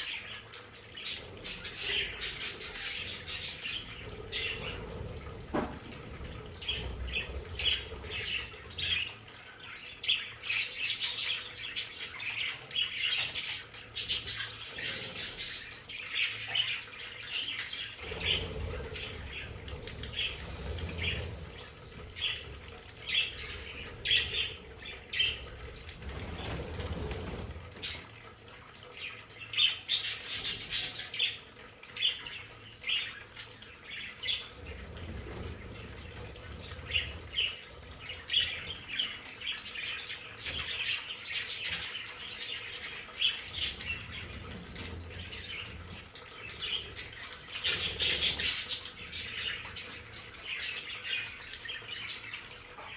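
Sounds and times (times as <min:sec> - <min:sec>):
budgerigars chirping and chattering: 0:00.0 - 0:28.1, 0:29.5 - 0:52.9.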